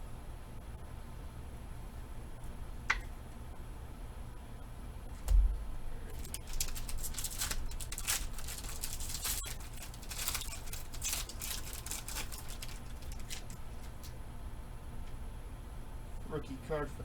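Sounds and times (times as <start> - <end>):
cards crinkling and rustling: 6.1 - 14.2.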